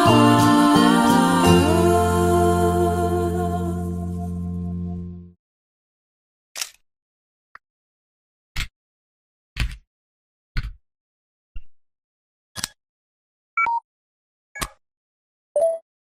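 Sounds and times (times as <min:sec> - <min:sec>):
falling three-note blip: 0:01.0 - 0:05.3.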